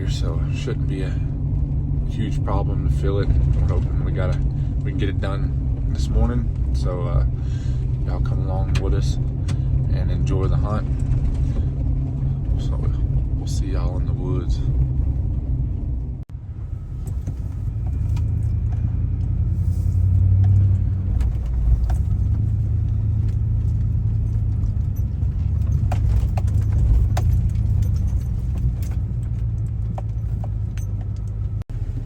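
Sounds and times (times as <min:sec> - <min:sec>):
engine and road rumble: 0:00.0 - 0:32.0
small clicks and rattles: 0:20.4 - 0:31.6.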